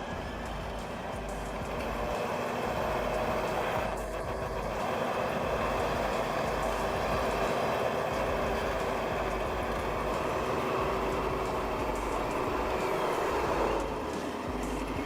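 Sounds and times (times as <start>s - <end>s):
bulldozer diesel engine running: 0.0s - 15.0s.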